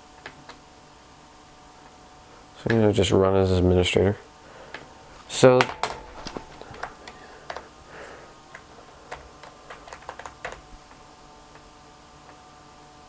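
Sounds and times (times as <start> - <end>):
soft keyboard key clicks: 8.5 - 10.7.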